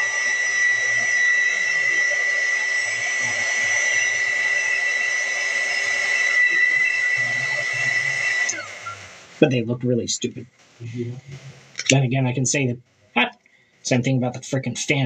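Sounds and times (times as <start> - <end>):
hot-air blower whining: 0.0 - 12.0.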